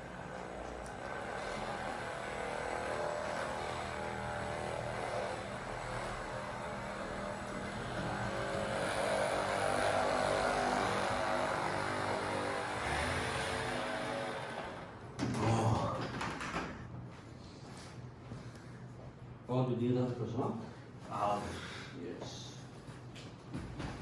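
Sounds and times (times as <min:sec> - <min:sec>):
machine motor humming: 0:00.0 - 0:15.0.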